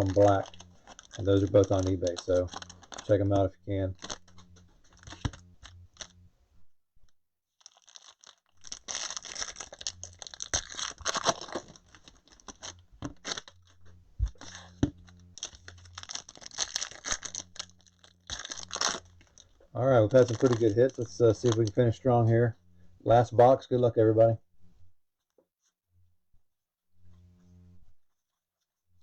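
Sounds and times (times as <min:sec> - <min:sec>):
plastic packaging tearing and crinkling: 0:00.0 - 0:06.2, 0:07.6 - 0:21.9.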